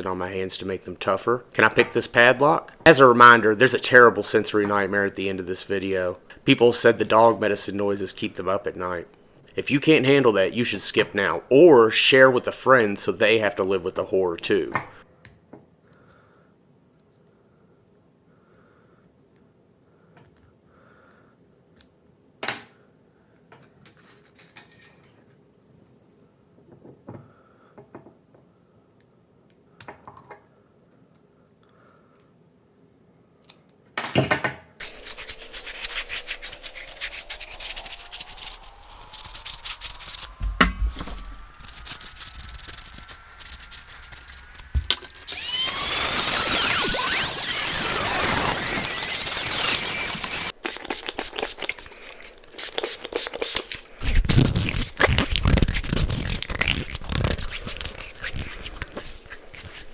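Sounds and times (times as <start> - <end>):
tone rising in pitch: 34.8 - 50.6
loud hissing noise: 34.8 - 59.9.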